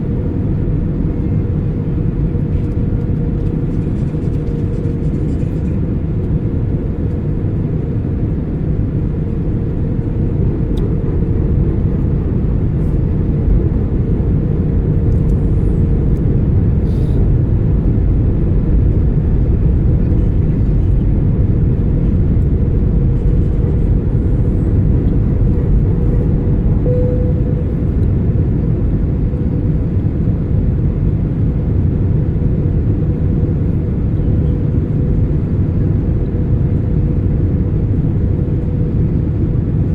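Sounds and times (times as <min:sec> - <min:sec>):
aircraft cabin engine rush: 0:00.0 - 0:39.9
steady hum: 0:19.2 - 0:30.7.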